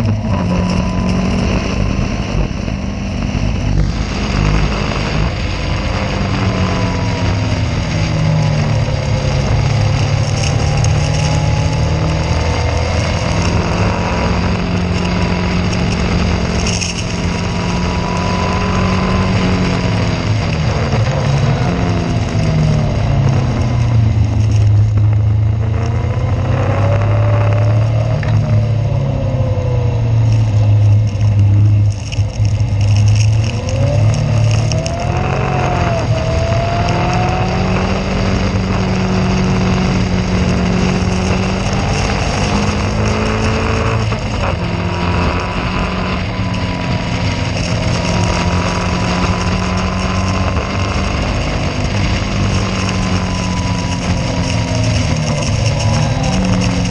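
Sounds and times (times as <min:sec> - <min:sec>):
constant rushing noise: 0:00.0 - 0:56.9
race car engine: 0:00.0 - 0:56.9.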